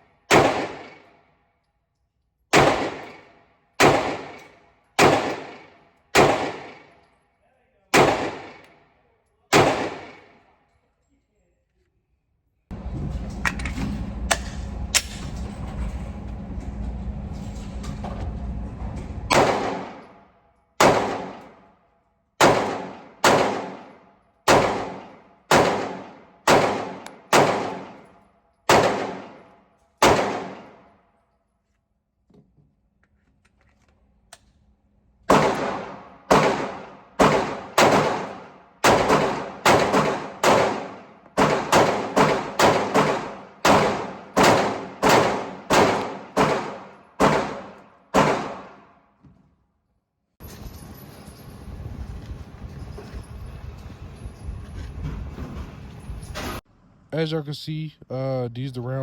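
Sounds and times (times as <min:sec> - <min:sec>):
pistol shots echoing indoors: 0:00.1 - 0:01.8, 0:02.5 - 0:07.3, 0:07.9 - 0:10.6, 0:19.3 - 0:31.4, 0:35.2 - 0:49.1.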